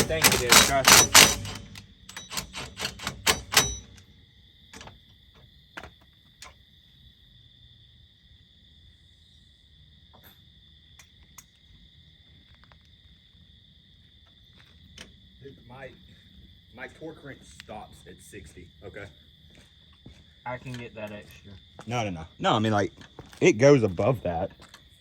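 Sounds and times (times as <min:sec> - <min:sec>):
tools clicking on bolts: 0:00.0 - 0:04.1
crickets chirring: 0:00.0 - 0:25.0.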